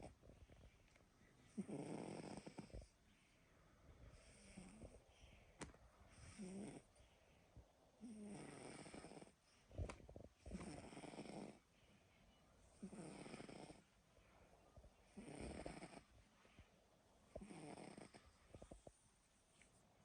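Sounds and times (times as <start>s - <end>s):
person snoring: 1.6s - 2.8s, 6.2s - 6.8s, 8.0s - 9.3s, 10.5s - 11.6s, 12.8s - 13.8s, 15.2s - 16.0s, 17.4s - 18.2s.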